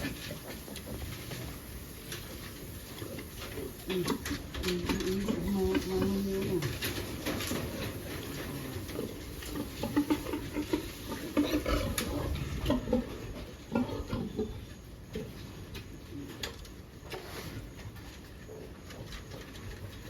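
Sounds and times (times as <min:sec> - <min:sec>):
pig grunting: 0:03.0 - 0:14.7.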